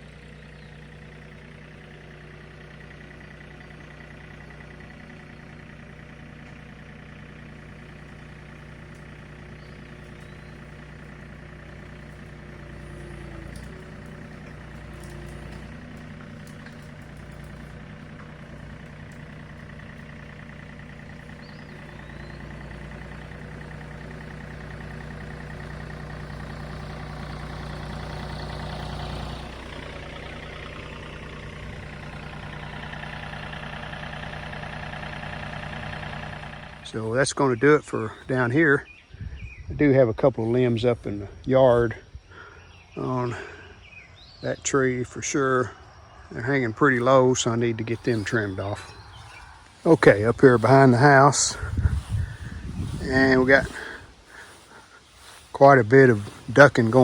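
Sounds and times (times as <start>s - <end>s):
tractor diesel engine running: 0.0s - 57.0s.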